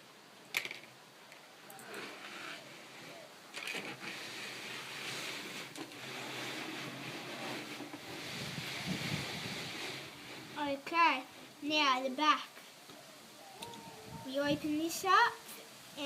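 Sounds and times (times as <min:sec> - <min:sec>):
steady hiss: 0:00.0 - 0:16.0
light scrapes on a surface: 0:01.8 - 0:10.6.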